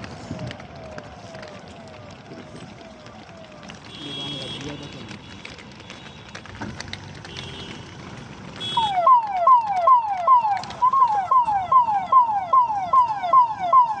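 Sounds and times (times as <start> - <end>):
electronic siren alarm: 8.7 - 14.0.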